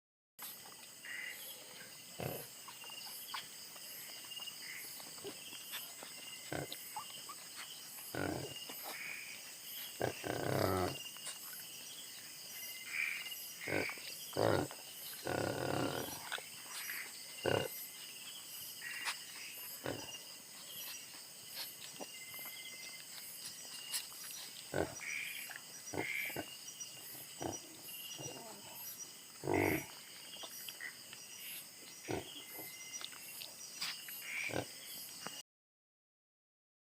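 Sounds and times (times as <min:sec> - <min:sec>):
insects chirring: 0:00.4 - 0:35.4
pig grunting: 0:01.3 - 0:02.5, 0:06.4 - 0:07.0, 0:08.1 - 0:08.6, 0:09.9 - 0:11.0, 0:13.6 - 0:16.4, 0:17.4 - 0:17.8, 0:19.7 - 0:20.2, 0:24.7 - 0:26.5, 0:27.2 - 0:28.8, 0:29.4 - 0:30.0, 0:32.0 - 0:32.8, 0:34.3 - 0:34.7.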